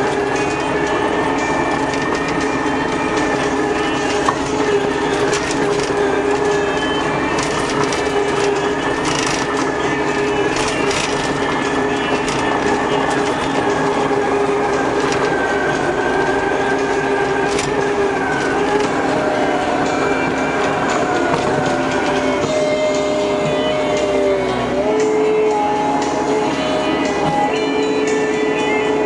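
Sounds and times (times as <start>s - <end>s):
metal clanks and rattles: 0.0s - 19.2s
diesel engine running under load: 0.0s - 29.0s
steady mechanical whine: 0.0s - 29.0s.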